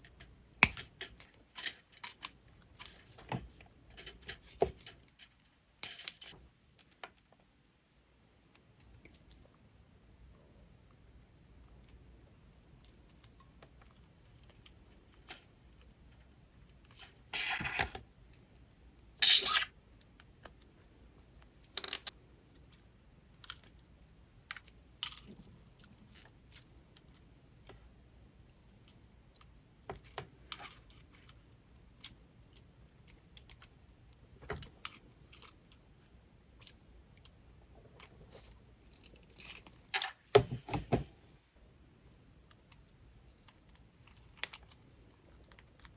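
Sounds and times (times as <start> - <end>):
pliers clicking and scraping wire: 0.0 - 7.4, 17.9 - 23.9, 28.8 - 36.0, 38.0 - 40.2, 42.4 - 45.9.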